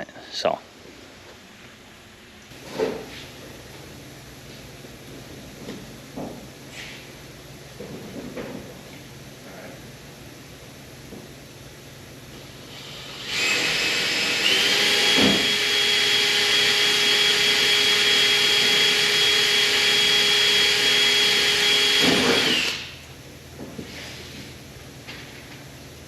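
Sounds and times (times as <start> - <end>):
power tool whining: 12.6 - 23.1.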